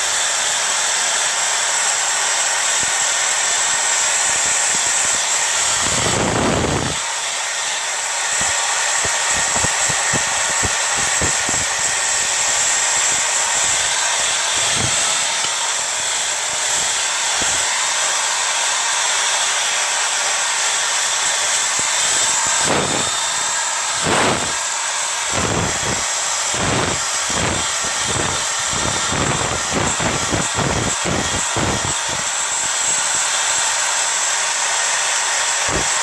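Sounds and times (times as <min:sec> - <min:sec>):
drill wire brush grinding metal pan: 0:00.0 - 0:36.0.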